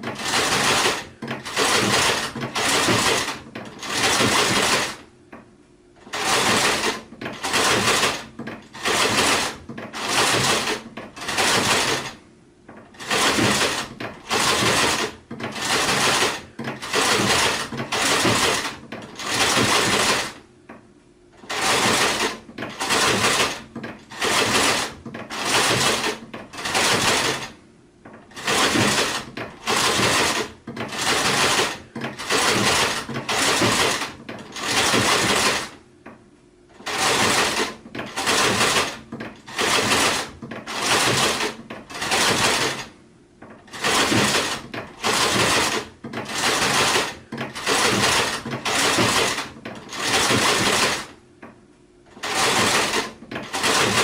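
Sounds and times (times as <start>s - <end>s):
sewing machine stitching: 0.0s - 5.1s, 6.0s - 20.5s, 21.4s - 35.8s, 36.7s - 51.2s, 52.1s - 54.0s.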